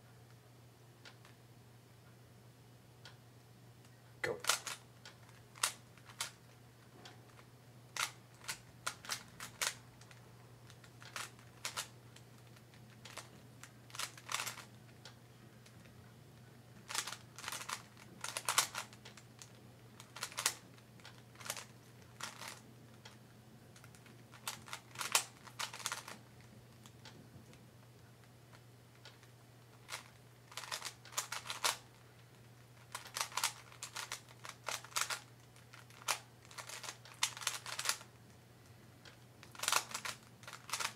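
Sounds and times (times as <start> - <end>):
puzzle cube plastic clicking: 4.3 - 6.4, 8.0 - 16.0, 16.8 - 23.2, 23.8 - 27.2, 28.2 - 38.1, 39.0 - 40.9.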